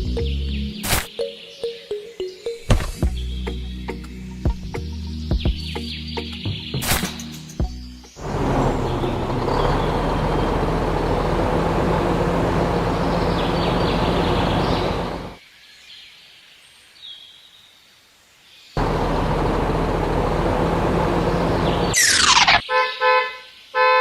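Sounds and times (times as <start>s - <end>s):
small engine running: 8.2s - 15.4s, 18.8s - 22.6s
faint high chirps: 21.8s - 22.6s.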